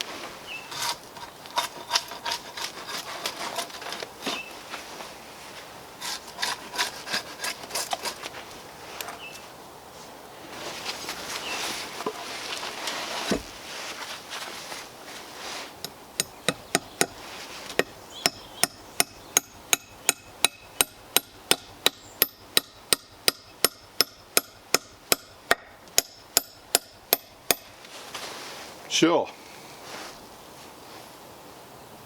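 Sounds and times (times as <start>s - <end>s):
soft scraping: 0.0s - 15.8s, 27.7s - 31.2s
sharp hammering strikes: 17.8s - 27.7s.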